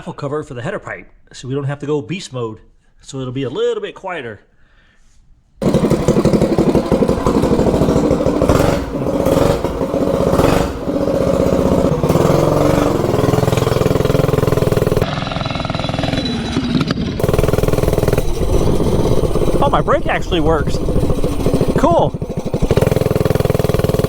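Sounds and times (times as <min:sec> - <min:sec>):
minibike engine revving: 0:05.6 - 0:24.0.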